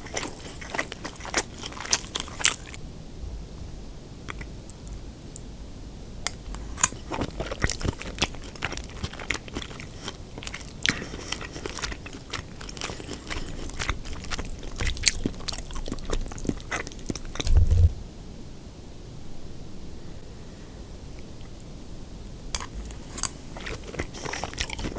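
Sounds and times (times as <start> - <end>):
crunchy chewing: 0.0 - 2.8, 6.3 - 17.9, 22.3 - 24.9
low thud: 17.4 - 18.1.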